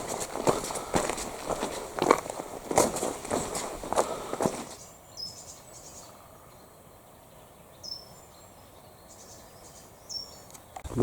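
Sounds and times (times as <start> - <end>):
footsteps: 0.0 - 4.8.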